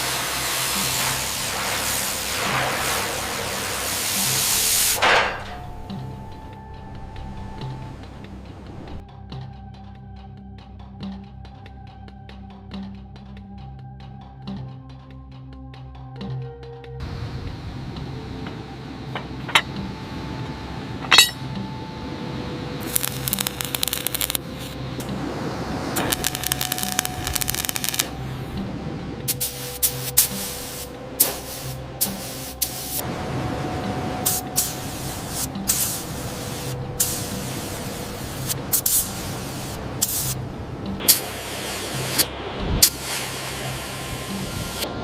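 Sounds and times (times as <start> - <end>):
hissing spray: 0.0 - 6.4, 22.8 - 28.4, 29.2 - 44.9
steady low hum: 0.0 - 9.0
hard clinks: 19.2 - 19.8, 21.0 - 21.6
rattle of clicks: 22.8 - 24.4, 26.0 - 28.1.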